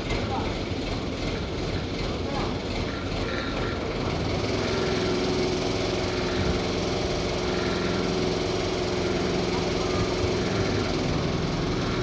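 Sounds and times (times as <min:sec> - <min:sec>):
large engine humming: 0:00.0 - 0:12.0.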